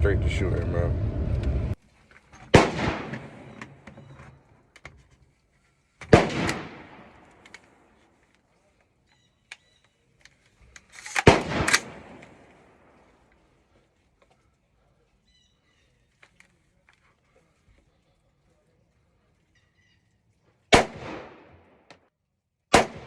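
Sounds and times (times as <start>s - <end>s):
gunshots with echoing tail: 2.5s - 3.6s, 6.1s - 7.9s, 11.2s - 13.0s, 20.7s - 21.9s, 22.7s - 23.0s.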